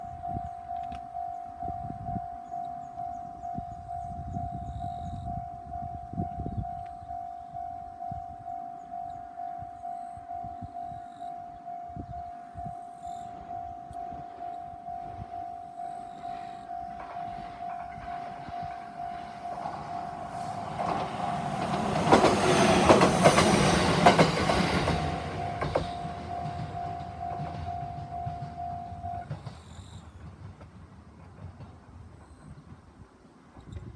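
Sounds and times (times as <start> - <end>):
level-crossing alarm ringing: 0.0 - 30.2
train passing: 0.0 - 33.9
wheels clacking over rail joints: 15.1 - 33.9.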